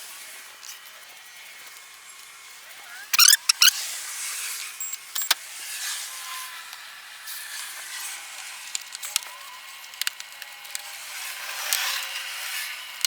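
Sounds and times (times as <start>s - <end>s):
sharp plastic clicks and snaps: 8.7s - 9.3s.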